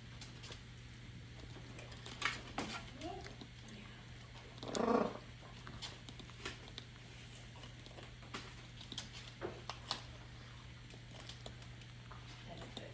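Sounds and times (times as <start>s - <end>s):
parrots pecking and crunching: 0.0s - 12.9s
steady low hum: 0.0s - 12.9s.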